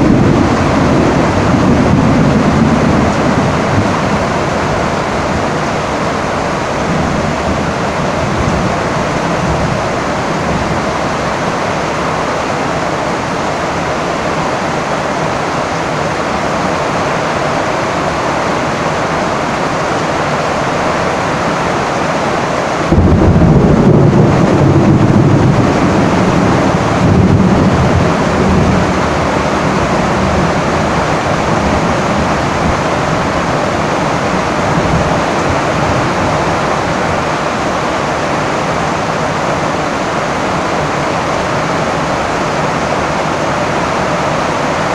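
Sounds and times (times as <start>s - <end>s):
thunder rumbling: 0.0s - 14.6s, 22.8s - 38.3s
heavy rain on a tin roof: 0.0s - 44.9s.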